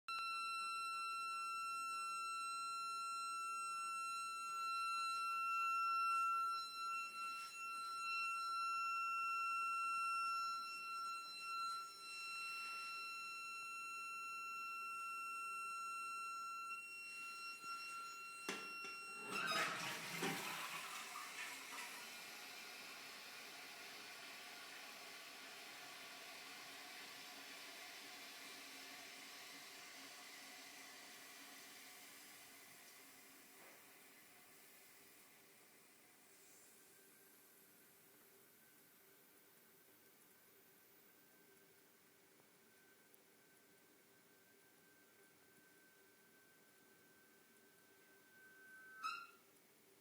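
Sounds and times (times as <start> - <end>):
toilet cistern whistling: 0.1 - 35.1, 47.6 - 49.5
toilet cistern refilling hiss: 18.5 - 38.2.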